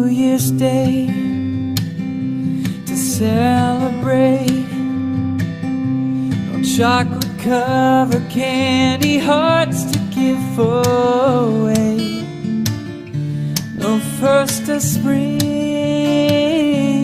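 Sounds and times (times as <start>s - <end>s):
person singing: 0.0s - 1.5s, 2.6s - 5.1s, 6.4s - 12.4s, 13.6s - 17.0s
acoustic guitar music: 0.0s - 17.0s.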